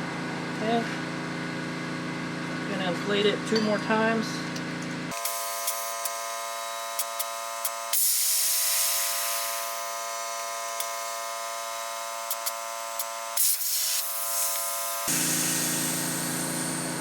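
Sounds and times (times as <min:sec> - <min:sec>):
electric tyre inflator buzzing: 0:04.5 - 0:17.0
hissing air: 0:13.4 - 0:17.0.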